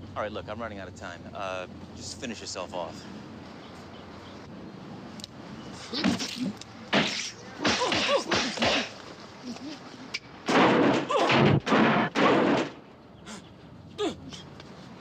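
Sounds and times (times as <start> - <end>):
punch hits: 10.5 - 12.8.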